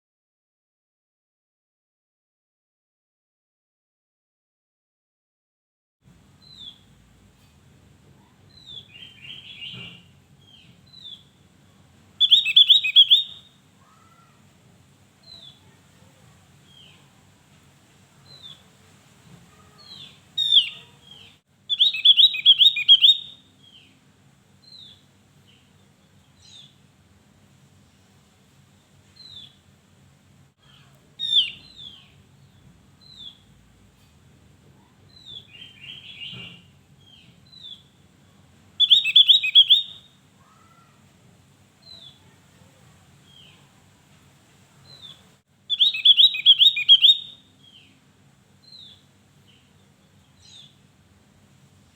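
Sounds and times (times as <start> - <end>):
bird chirps: 8.5 - 11.3, 12.2 - 14.2, 19.7 - 24.0, 31.2 - 32.1, 35.1 - 37.9, 38.8 - 40.8, 44.9 - 47.9
bird singing fast high notes: 12.2 - 13.4, 21.7 - 23.3, 38.8 - 40.0, 45.7 - 47.3.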